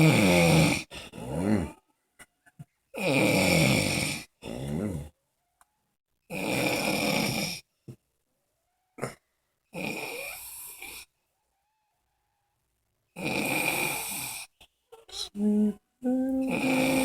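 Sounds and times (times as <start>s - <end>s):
person snoring: 0.0s - 1.8s, 3.0s - 5.1s, 15.3s - 17.0s
person snorting: 15.2s - 17.0s.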